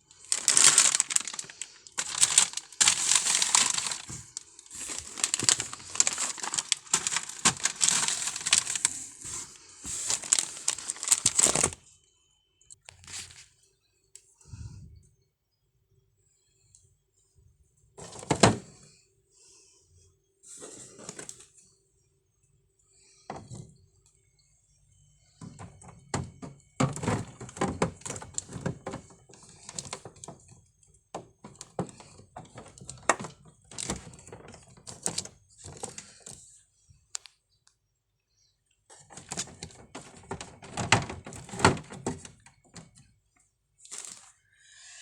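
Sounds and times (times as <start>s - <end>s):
packaging rustling: 0.0s - 11.8s, 25.6s - 30.4s, 31.2s - 36.4s, 39.1s - 42.6s
food containers clattering: 0.2s - 11.8s, 25.4s - 30.5s.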